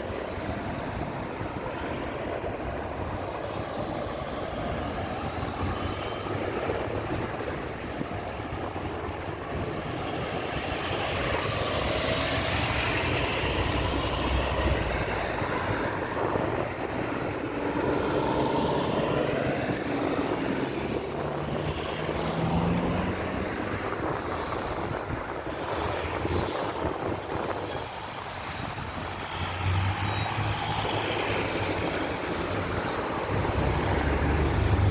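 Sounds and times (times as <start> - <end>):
road traffic passing: 0.0 - 34.9
vehicle accelerating: 10.8 - 26.9, 29.0 - 34.9.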